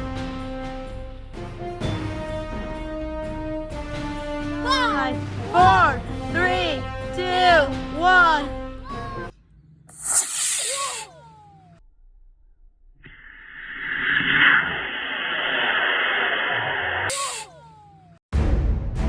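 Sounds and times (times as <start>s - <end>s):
music: 0.0s - 9.6s, 18.3s - 19.0s
rocket motor hissing and whistling: 9.9s - 11.2s, 13.1s - 17.6s
sharp burst with falling whistles: 9.9s - 11.2s, 13.2s - 17.6s.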